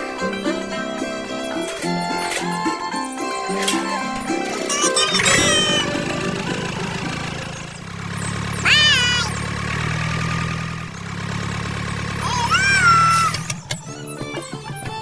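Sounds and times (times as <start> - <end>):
cat meowing: 8.6 - 9.4, 12.2 - 13.4.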